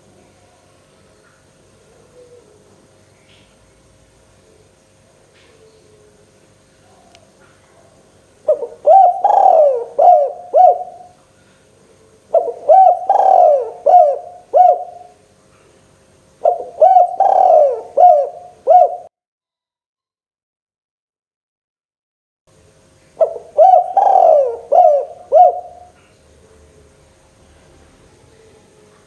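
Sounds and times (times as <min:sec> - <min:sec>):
dove cooing: 0:01.8 - 0:02.9, 0:05.4 - 0:11.2, 0:11.9 - 0:15.2, 0:16.4 - 0:19.1, 0:23.2 - 0:27.0.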